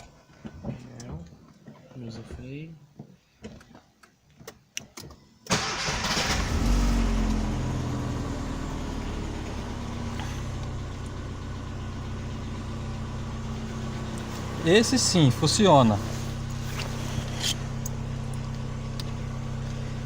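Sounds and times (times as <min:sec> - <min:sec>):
car engine starting and idling: 0:05.4 - 0:20.0.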